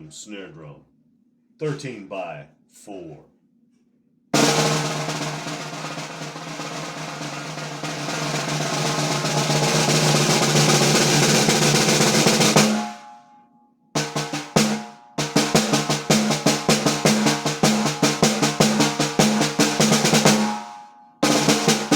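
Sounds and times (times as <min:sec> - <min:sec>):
snare drum roll: 0:04.4 - 0:13.1, 0:14.0 - 0:21.9.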